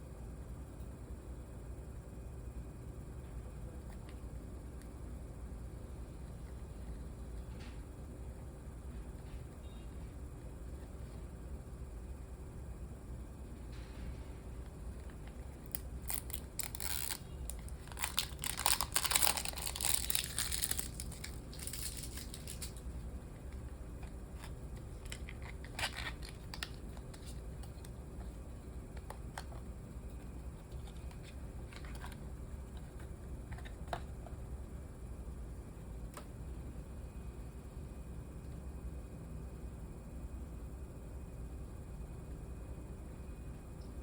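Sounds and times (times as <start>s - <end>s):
packaging crinkling and rustling: 15.1s - 22.9s, 23.5s - 27.9s.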